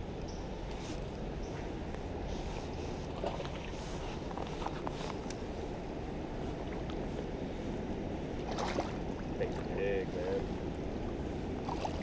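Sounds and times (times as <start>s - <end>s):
wind buffeting microphone: 0.0s - 12.0s
flowing creek water: 8.4s - 10.0s, 11.6s - 12.0s.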